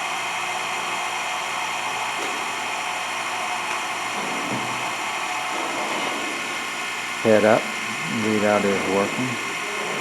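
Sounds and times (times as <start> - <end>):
grinder spindle whirring: 2.8 - 10.0.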